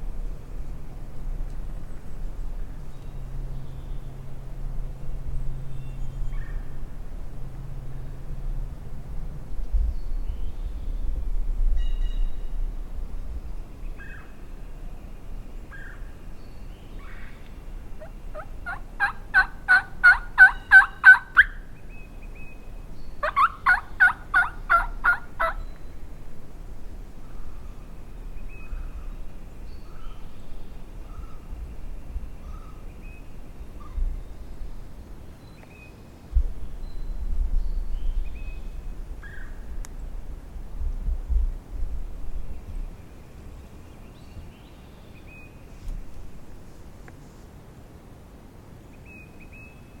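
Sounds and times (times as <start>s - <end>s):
faint bird calls: 16.9s - 26.0s, 27.2s - 34.6s
turkey yelping: 18.0s - 21.6s, 23.2s - 25.6s.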